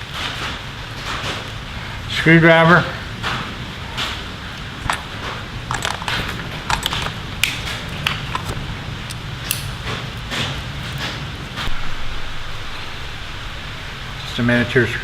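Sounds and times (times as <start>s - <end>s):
small metal tools clicking: 4.8s - 9.8s.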